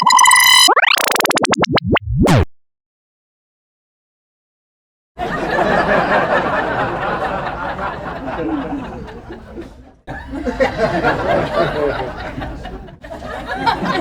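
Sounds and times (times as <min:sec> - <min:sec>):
group of people laughing: 0:05.2 - 0:14.0.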